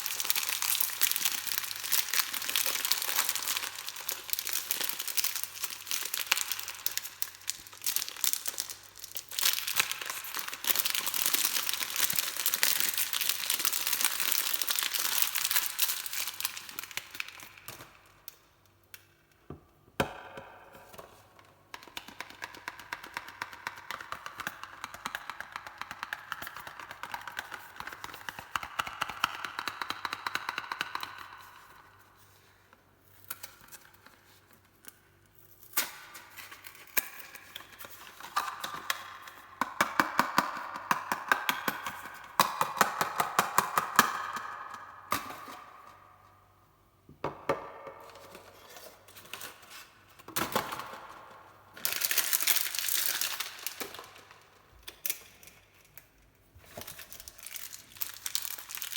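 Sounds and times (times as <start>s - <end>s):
packaging crinkling and tearing: 0.0s - 18.4s, 51.8s - 58.9s.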